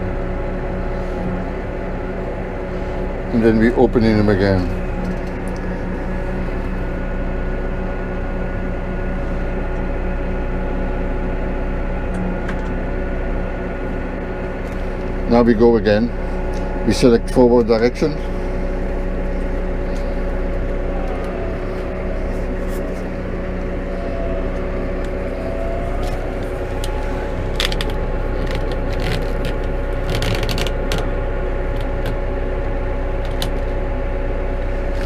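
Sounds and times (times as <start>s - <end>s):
tractor diesel engine whining: 0.0s - 35.0s
clicks and rattles: 26.8s - 31.1s.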